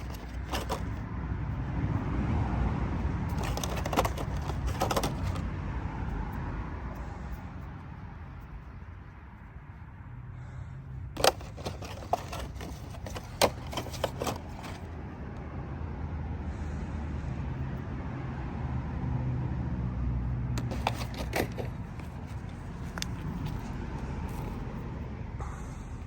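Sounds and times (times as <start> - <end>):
plastic toy animals clicking: 3.3 - 5.4, 11.2 - 14.8.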